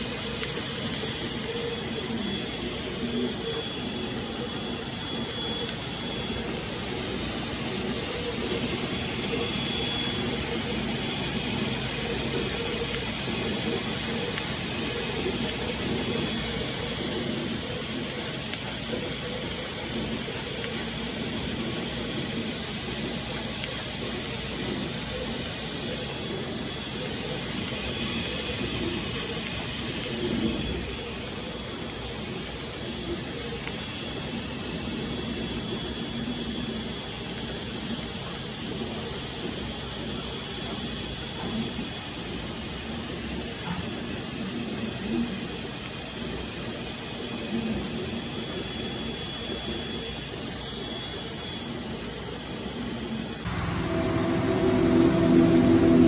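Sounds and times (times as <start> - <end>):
cutting machine running: 53.4 - 56.0.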